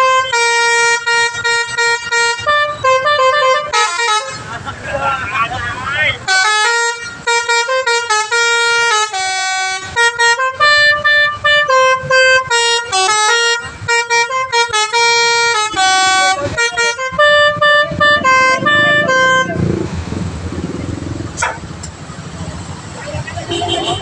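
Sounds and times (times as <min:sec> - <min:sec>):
multi-tone air horn melody: 0:00.0 - 0:04.5, 0:06.2 - 0:19.8.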